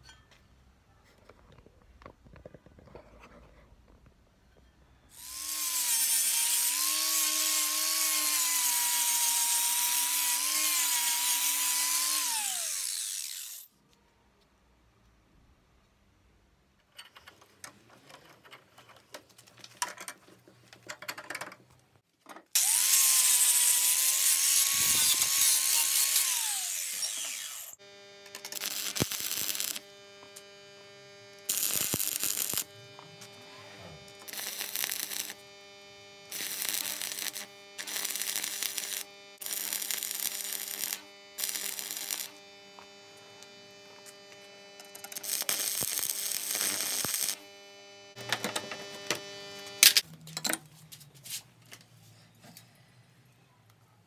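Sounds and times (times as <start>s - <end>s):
power tool cutting: 5.2s - 13.7s, 22.6s - 50.0s.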